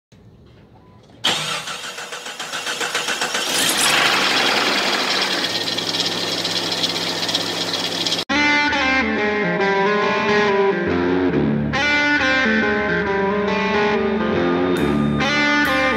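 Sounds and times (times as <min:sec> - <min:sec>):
car engine starting and rattling: 0:01.2 - 0:08.3.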